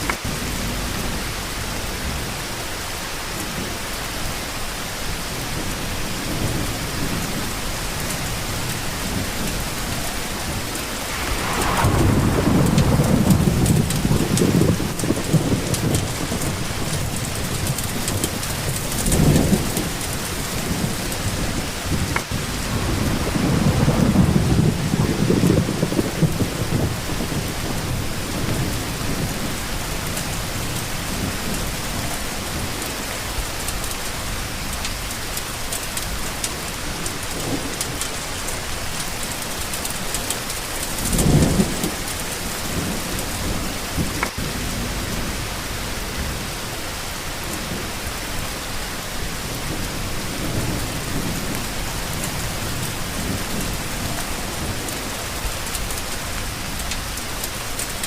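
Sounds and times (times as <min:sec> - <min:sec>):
steady rain falling: 0:00.0 - 0:58.0
thunder rumbling: 0:06.2 - 0:32.8.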